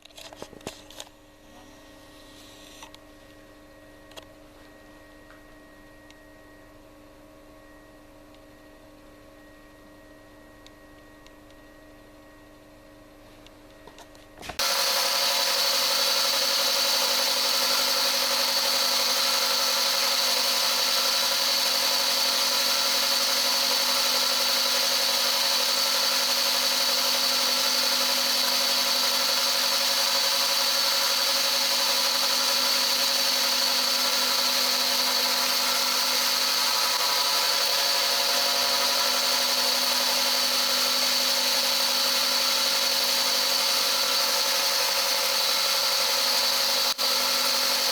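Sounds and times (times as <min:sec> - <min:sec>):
milling machine cutting metal: 0:14.6 - 0:47.9.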